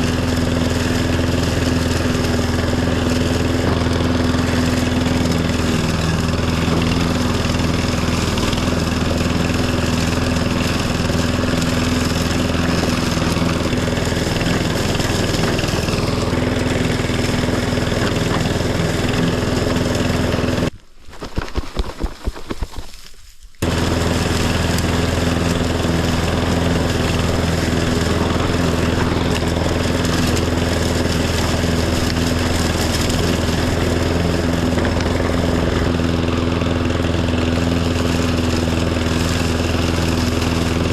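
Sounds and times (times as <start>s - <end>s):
lawn tractor engine running: 0.0s - 20.7s, 23.6s - 40.9s.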